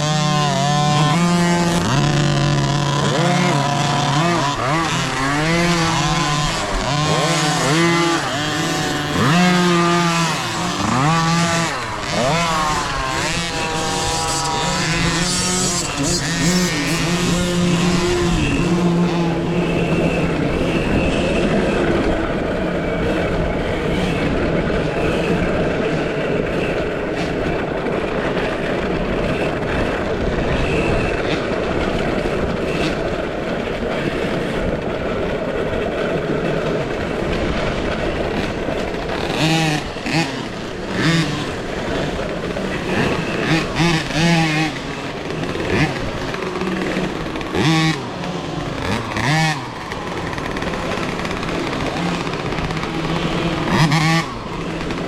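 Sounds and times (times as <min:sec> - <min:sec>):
motocross bike motors revving: 0:00.0 - 0:55.0
wind and tire noise: 0:00.0 - 0:55.0.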